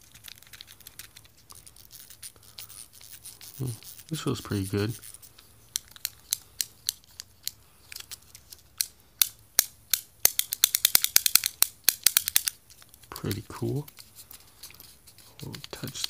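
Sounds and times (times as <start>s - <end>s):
plastic fidget toy clicks: 5.7s - 13.5s.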